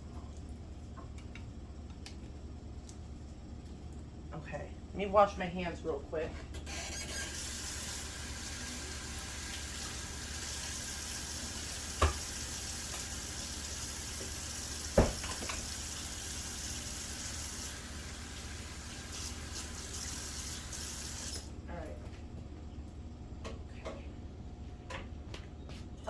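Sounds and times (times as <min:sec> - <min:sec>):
tap running into sink: 0:11.8 - 0:15.8.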